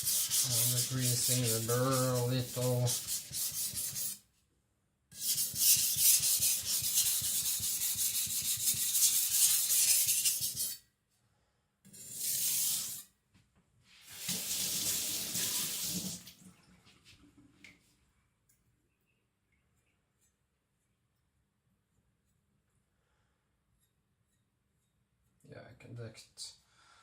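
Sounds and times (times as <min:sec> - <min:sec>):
cleaver scraping on whetstone: 0:00.0 - 0:04.2.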